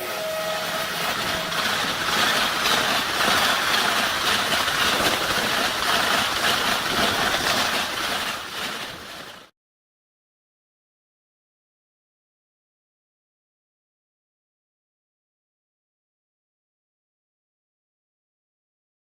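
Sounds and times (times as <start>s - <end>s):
train horn: 0.0s - 2.7s
train wheels rolling on rail: 0.2s - 9.5s.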